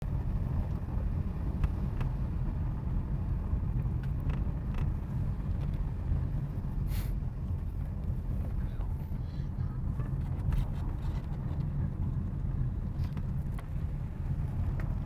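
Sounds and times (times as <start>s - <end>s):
car engine and road rumble: 0.0s - 15.0s
short hiss: 6.9s - 7.2s.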